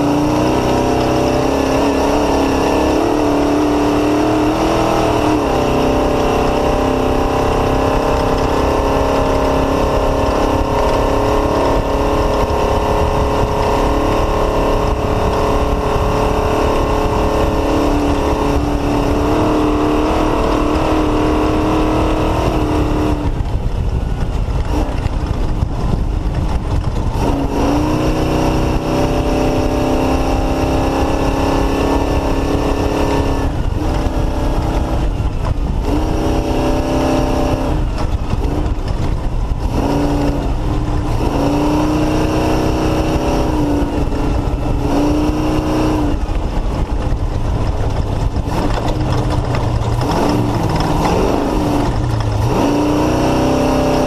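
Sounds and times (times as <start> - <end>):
noisy rumble: 0.0 - 54.0
race car engine revving: 0.0 - 54.0.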